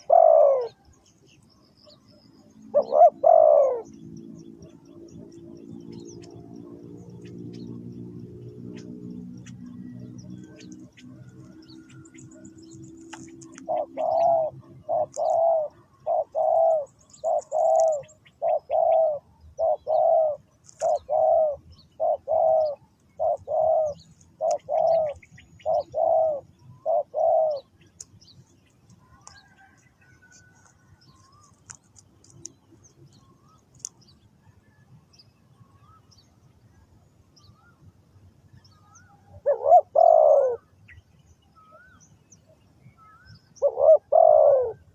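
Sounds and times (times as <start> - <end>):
dove cooing: 0.0 - 0.9, 2.6 - 27.8, 39.0 - 40.7, 43.6 - 44.9
small birds chirping: 0.0 - 44.9.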